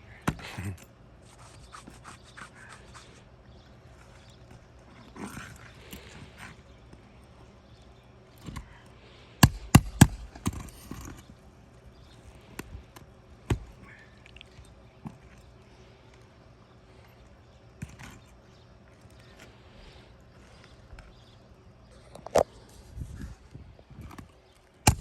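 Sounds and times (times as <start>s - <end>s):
tool knocking shingles: 9.4s - 11.3s, 13.5s - 13.9s
shingles cracking: 9.4s - 11.4s.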